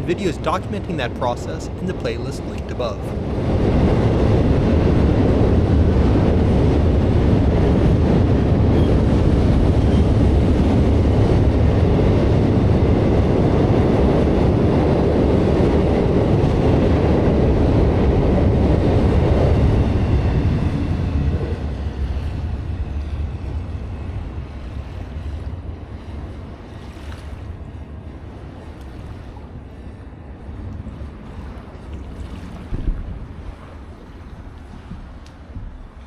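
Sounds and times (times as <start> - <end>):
freight train wheels rumbling on rail: 0.0 - 26.8.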